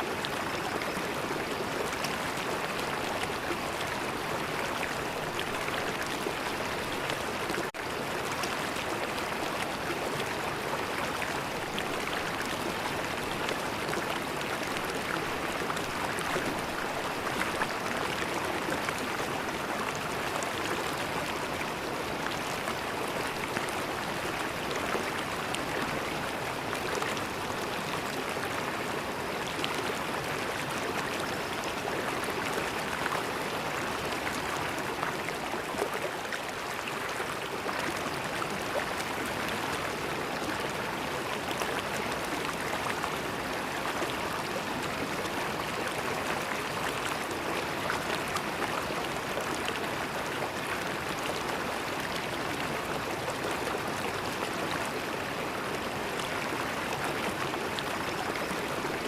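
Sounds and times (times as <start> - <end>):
river water flowing over stones: 0.0 - 59.0.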